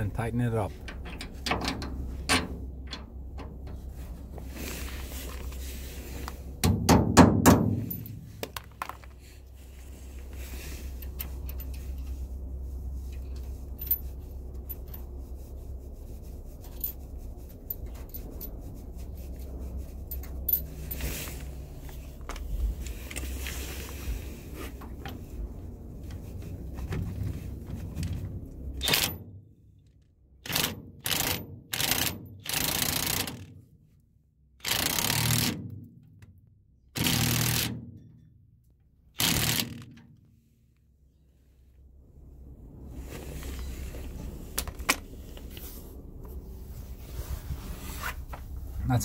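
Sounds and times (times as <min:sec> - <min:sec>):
steady low rumble: 0:00.0 - 0:30.5, 0:40.2 - 0:49.0
loud knocks: 0:06.6 - 0:07.9
metal clinks and scrapes: 0:07.6 - 0:12.3, 0:13.0 - 0:24.0.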